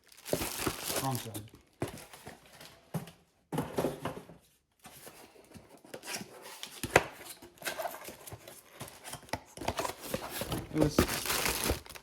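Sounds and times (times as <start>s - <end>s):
plastic packaging rustling: 0.0s - 2.8s, 7.5s - 12.0s.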